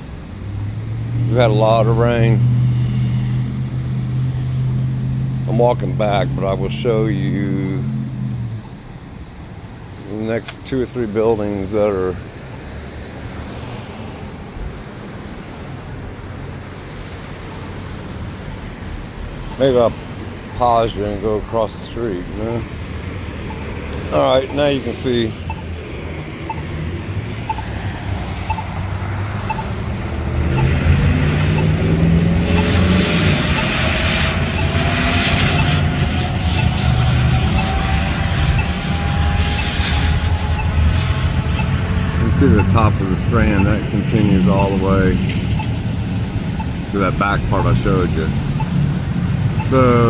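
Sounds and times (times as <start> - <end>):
low traffic rumble: 0.0 - 50.0
faint short beeps: 23.5 - 25.7, 28.5 - 28.7
whine rising in pitch: 23.5 - 44.8.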